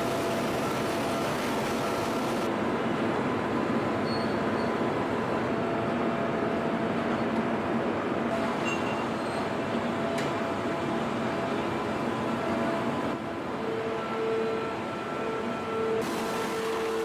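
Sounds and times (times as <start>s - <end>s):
faint machine whines: 0.0s - 2.5s
industrial machinery rumble and hum: 0.0s - 3.8s.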